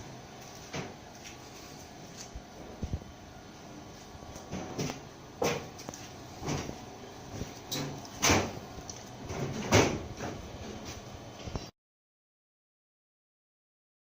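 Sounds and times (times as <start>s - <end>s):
die-cutter clunks and knocks: 7.7s - 8.6s, 9.3s - 10.8s.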